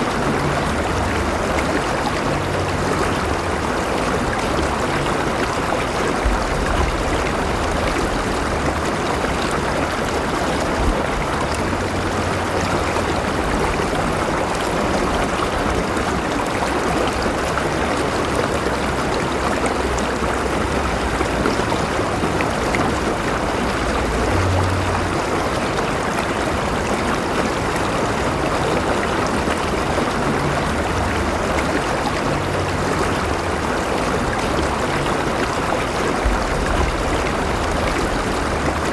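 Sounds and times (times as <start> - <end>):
river water flowing over stones: 0.0 - 38.9
faint low rumble: 0.1 - 15.8, 30.2 - 38.9.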